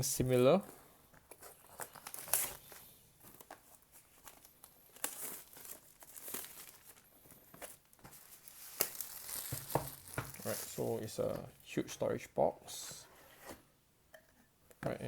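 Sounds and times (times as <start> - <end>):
crinkling wrapping tearing: 1.4 - 2.7, 4.2 - 7.1, 7.8 - 11.1.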